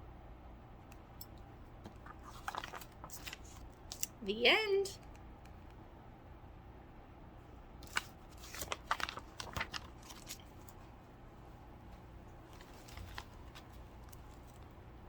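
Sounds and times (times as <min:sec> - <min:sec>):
low room hum: 0:00.0 - 0:15.0
rustling and clicking handling: 0:00.9 - 0:04.2, 0:07.8 - 0:10.9, 0:11.9 - 0:14.8.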